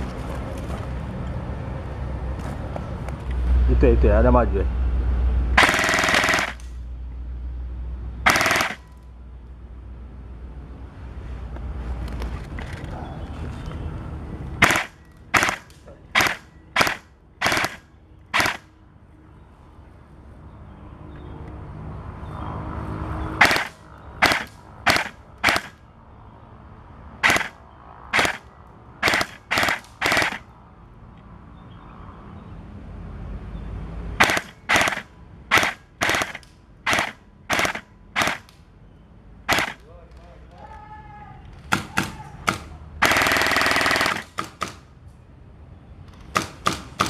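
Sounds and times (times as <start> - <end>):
airsoft gun shots: 5.6 - 6.6, 8.3 - 8.9, 14.6 - 17.8, 18.4 - 18.7, 23.4 - 25.8, 27.2 - 28.4, 29.0 - 30.4, 34.2 - 38.5, 39.5 - 39.8, 41.7 - 44.8.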